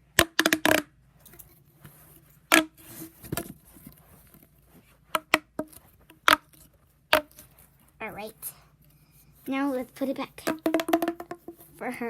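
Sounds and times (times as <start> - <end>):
plastic pop tube snapping: 0.1 - 0.9, 2.5 - 3.5, 5.1 - 7.5, 10.4 - 11.8.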